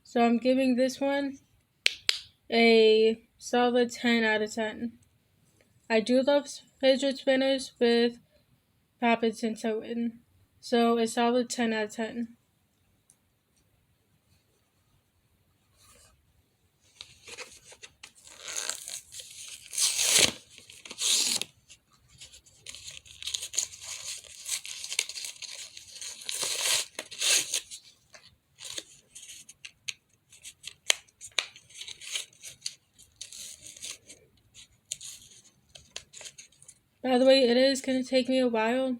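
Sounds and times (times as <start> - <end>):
packaging torn and crinkling: 17.0 - 21.6, 22.2 - 36.8.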